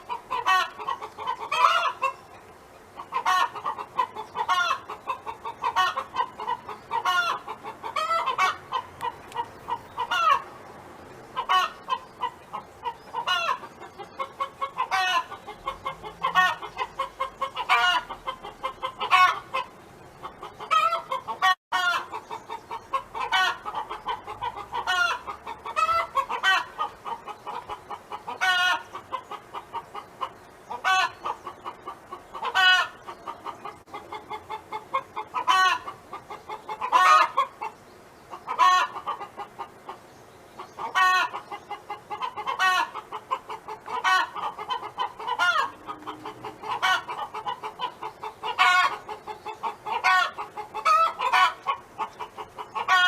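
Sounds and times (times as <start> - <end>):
hen clucking: 0.0 - 10.6, 11.3 - 53.0
hen drawn-out call: 11.4 - 19.7, 34.1 - 37.8, 38.4 - 39.5, 40.7 - 53.0.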